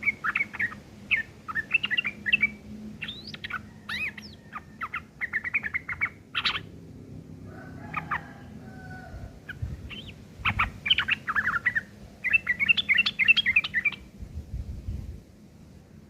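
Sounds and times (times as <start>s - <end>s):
bulbul chattering song: 0.0s - 6.8s, 9.4s - 14.1s.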